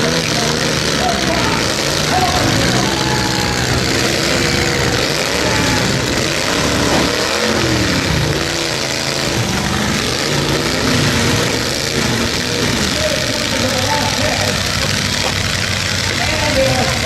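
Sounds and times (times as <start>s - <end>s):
truck engines revving: 0.0s - 17.0s.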